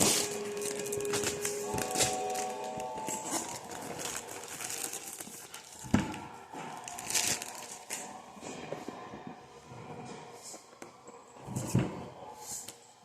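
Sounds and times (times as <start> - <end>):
packaging crinkling and rustling: 0.0 - 8.3.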